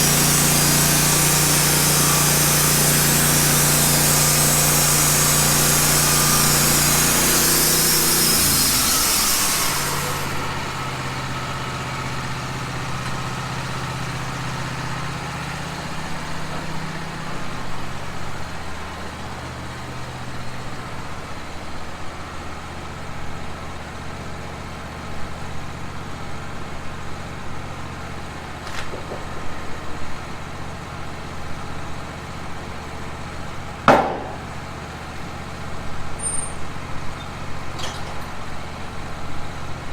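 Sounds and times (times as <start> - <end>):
band saw blade hissing: 0.0 - 12.3, 36.2 - 38.4
sawmill engine running: 0.0 - 39.9
sharp knock: 33.9 - 34.5.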